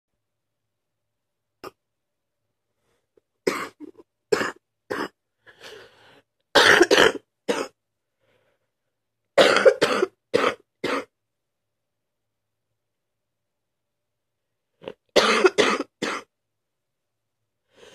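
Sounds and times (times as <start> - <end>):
person coughing: 3.5 - 5.2, 6.6 - 7.8, 9.4 - 11.1, 15.1 - 16.3
noisy breath in: 5.4 - 6.4, 8.1 - 8.8, 17.6 - 17.9.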